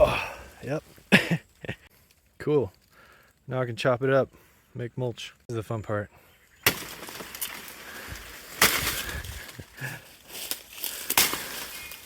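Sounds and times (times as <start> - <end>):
blade chopping plant stalk: 6.6 - 7.6, 8.5 - 9.2, 10.9 - 11.9
stem cracking and splitting: 6.6 - 12.0.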